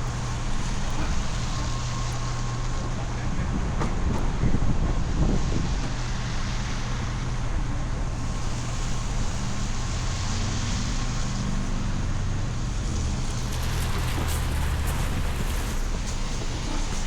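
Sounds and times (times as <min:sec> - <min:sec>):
vehicle engines humming: 0:08.1 - 0:17.0
wind on microphone: 0:12.9 - 0:17.0.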